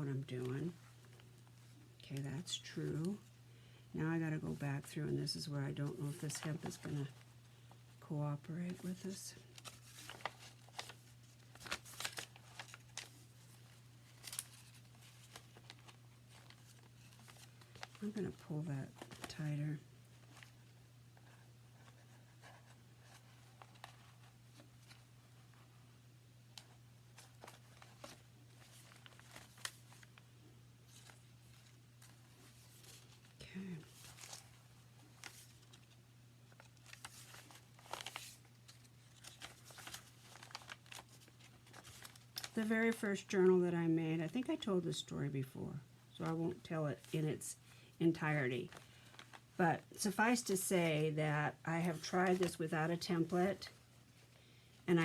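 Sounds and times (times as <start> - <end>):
low electrical hum: 0.0 - 55.0
paper pages rustling: 5.3 - 7.8, 8.6 - 19.5, 20.1 - 25.7, 26.6 - 30.2, 30.8 - 42.7, 48.6 - 49.5, 51.8 - 52.6.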